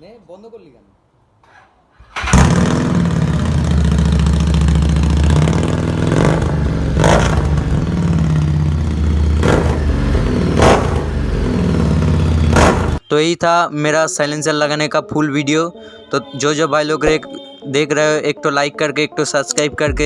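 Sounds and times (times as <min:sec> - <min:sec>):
motorcycle throttle blips: 0:02.1 - 0:13.2
motorcycle engine idling loudly: 0:02.2 - 0:13.0.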